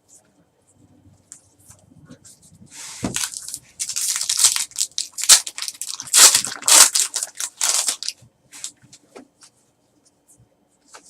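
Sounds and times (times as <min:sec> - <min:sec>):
wrapper tearing and crumpling: 0:03.1 - 0:08.2.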